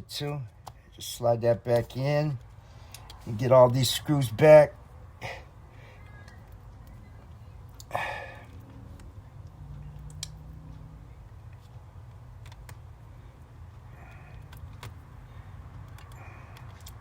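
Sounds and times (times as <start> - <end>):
small screws and plastic parts clicking: 15.7 - 17.0.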